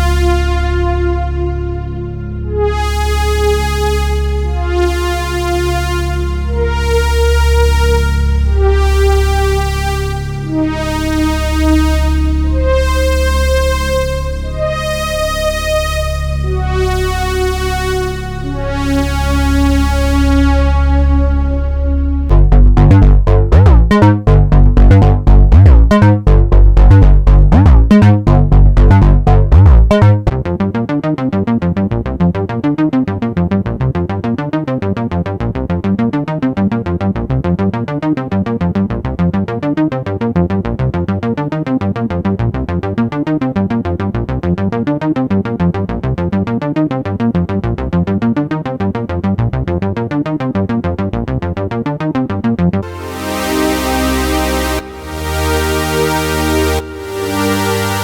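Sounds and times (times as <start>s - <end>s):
held low bass note: 0.0s - 30.6s, 52.8s - 58.0s
synthesizer pad chords: 0.0s - 31.0s, 52.8s - 58.0s.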